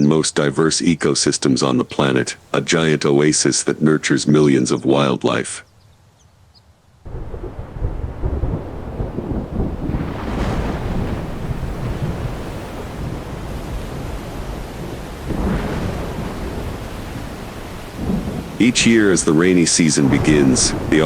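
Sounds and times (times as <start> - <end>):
steady rain: 0.0 - 5.1, 7.0 - 21.0
thunder rumbling: 7.1 - 21.0.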